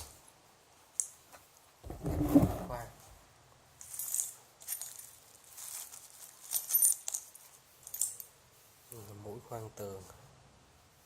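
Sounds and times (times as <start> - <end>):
metal drill bits clinking: 3.8 - 8.3.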